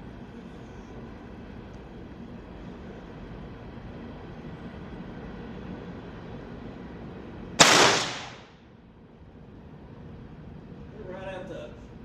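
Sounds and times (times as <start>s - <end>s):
rifle shot: 7.6s - 8.5s.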